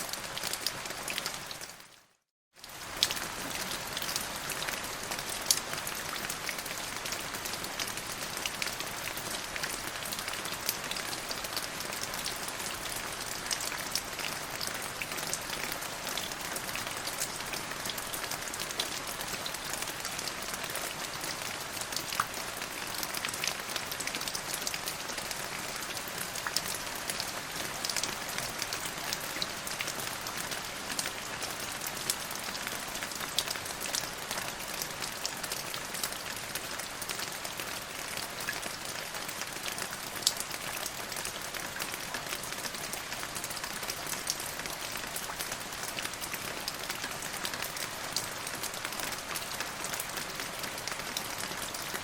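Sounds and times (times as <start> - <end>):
rain falling: 0.0 - 52.0.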